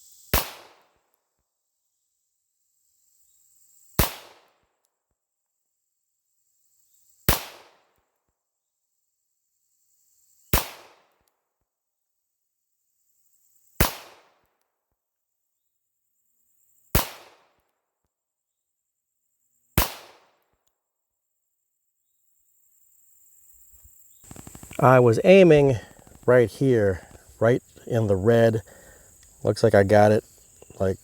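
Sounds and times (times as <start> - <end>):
pistol shots with echo: 17.0 - 17.4, 19.8 - 20.3.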